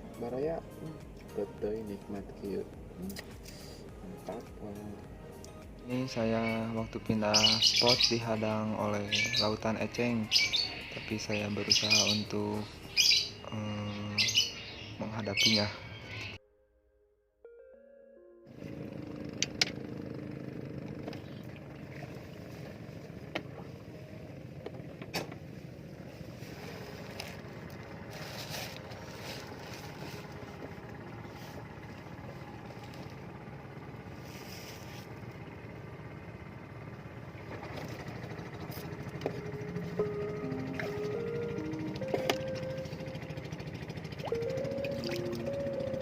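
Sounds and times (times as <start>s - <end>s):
small boat motor running: 0.0s - 16.4s, 18.4s - 46.0s.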